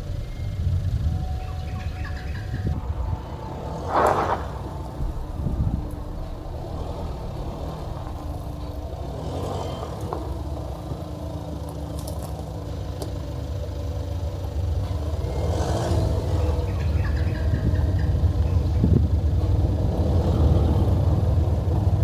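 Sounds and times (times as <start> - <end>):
engine low rumble: 0.0 - 22.0
light clatter: 3.9 - 13.7.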